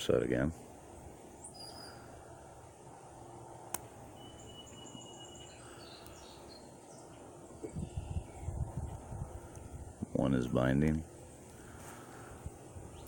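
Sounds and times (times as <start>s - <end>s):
faint outdoor background: 0.0s - 13.0s
thin high chirps: 4.1s - 8.5s.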